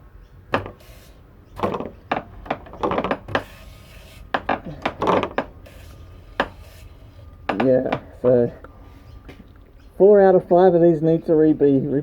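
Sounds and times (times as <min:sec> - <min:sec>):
short hiss bursts: 0:00.6 - 0:01.3, 0:05.6 - 0:07.2.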